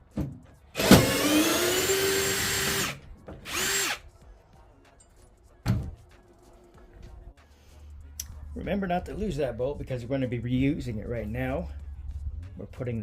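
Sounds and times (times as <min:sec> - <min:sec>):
power drill spinning: 0:00.8 - 0:04.0.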